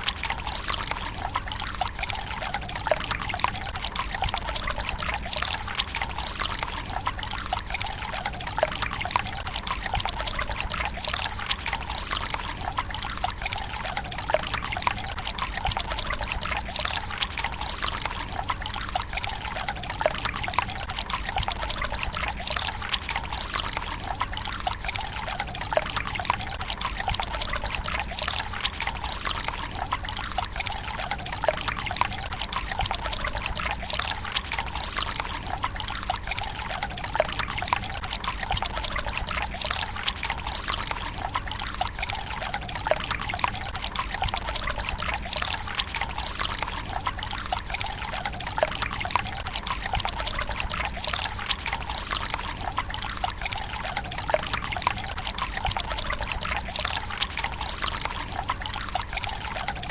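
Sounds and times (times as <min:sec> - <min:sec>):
water dripping: 0:00.0 - 0:59.9
water trickling into stone basin: 0:00.0 - 0:59.9.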